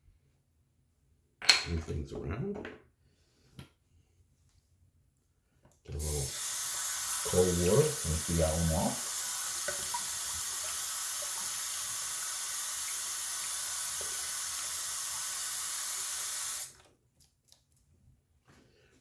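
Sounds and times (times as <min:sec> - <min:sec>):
tap running water: 0:06.0 - 0:16.9
water dripping: 0:06.1 - 0:16.9.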